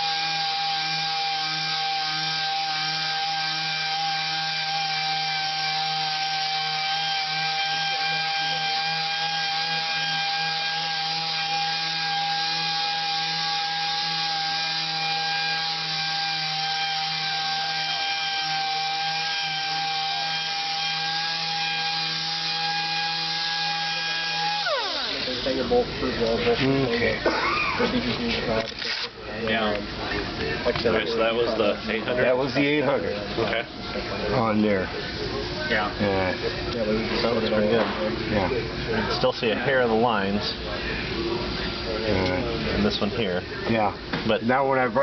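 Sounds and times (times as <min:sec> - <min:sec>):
orbital sander running: 0:00.0 - 0:27.0.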